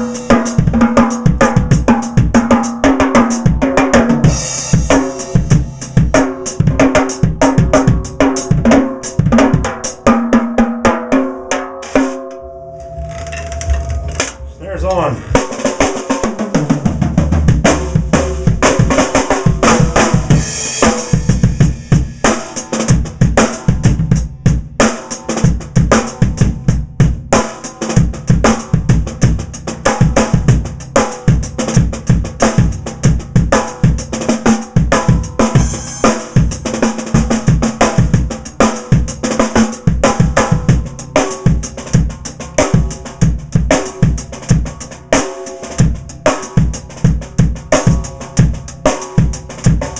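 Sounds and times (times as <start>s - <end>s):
cymbal: 18.2s - 23.8s, 34.6s - 39.0s.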